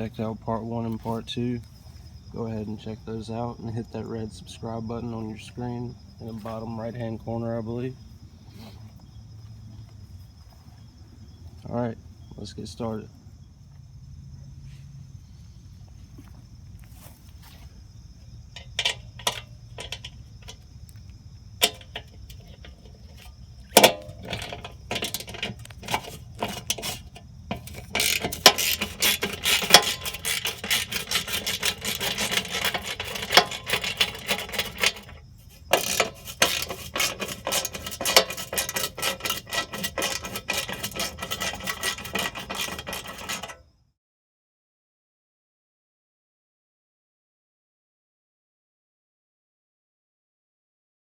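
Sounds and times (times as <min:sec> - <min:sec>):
ratchet wrench clicking: 0:23.8 - 0:43.6.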